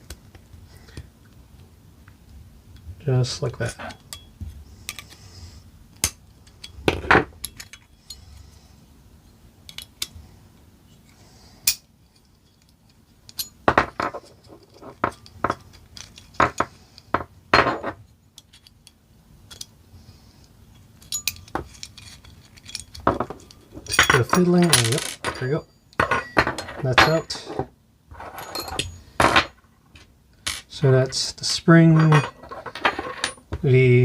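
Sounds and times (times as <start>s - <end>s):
small steel parts clinking: 3.6s - 5.2s, 6.0s - 8.5s, 9.7s - 10.1s, 11.6s - 19.7s, 20.7s - 33.6s.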